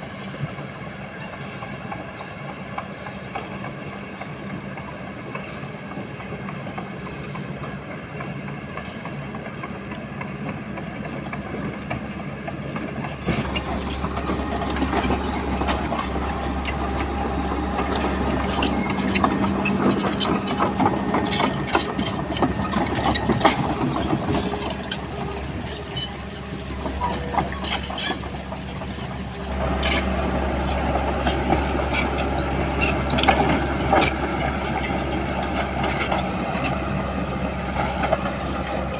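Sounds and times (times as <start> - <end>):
diesel engine of heavy machinery: 0.0 - 38.9
clanking and scraping on stone: 12.9 - 30.8.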